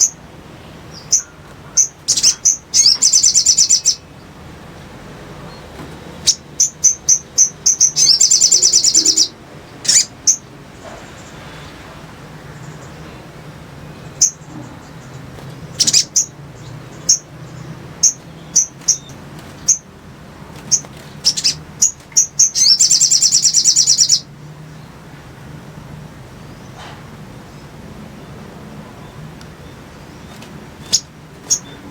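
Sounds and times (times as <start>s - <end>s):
bird chattering trill: 0.9s - 4.2s, 6.2s - 10.5s, 14.2s - 19.9s, 20.7s - 24.3s.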